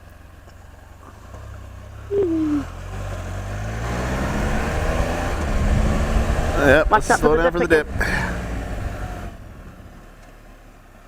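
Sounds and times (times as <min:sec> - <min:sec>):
engine accelerating: 0:01.0 - 0:10.7
falling vocal sound: 0:02.1 - 0:02.7.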